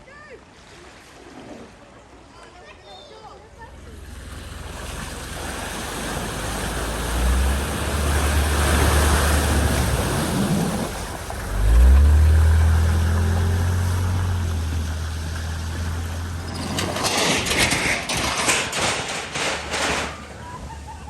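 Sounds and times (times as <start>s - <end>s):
water rushing and spraying: 3.7s - 16.6s
vehicle engine droning and revving: 3.7s - 17.7s.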